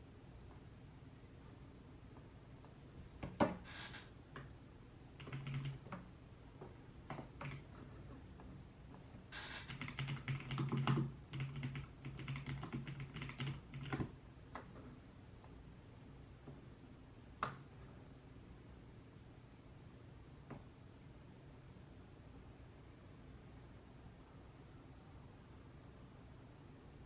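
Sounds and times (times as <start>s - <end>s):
typing on keyboard: 5.2s - 6.1s, 7.1s - 7.8s, 9.4s - 14.8s.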